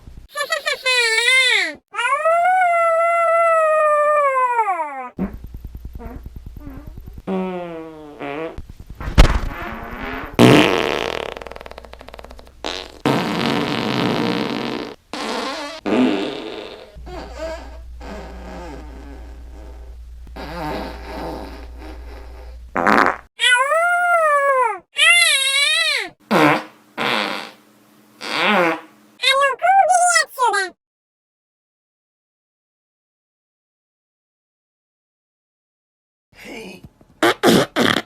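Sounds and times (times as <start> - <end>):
fart sound effects: 4.9 - 23.3, 25.8 - 27.6, 28.2 - 28.9, 37.2 - 38.0.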